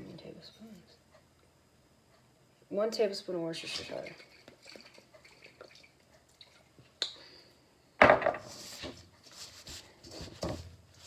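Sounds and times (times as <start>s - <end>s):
small knocks: 8.0s - 8.6s.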